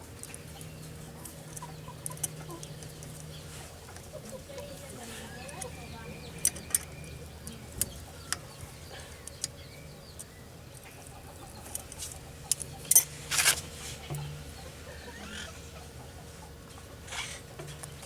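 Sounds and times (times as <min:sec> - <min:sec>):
hand tools tapping on metal: 0:00.0 - 0:14.4.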